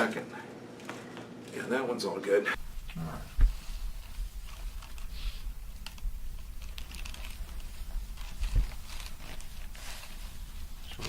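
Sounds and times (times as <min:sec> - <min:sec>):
rustling: 0:02.6 - 0:11.0.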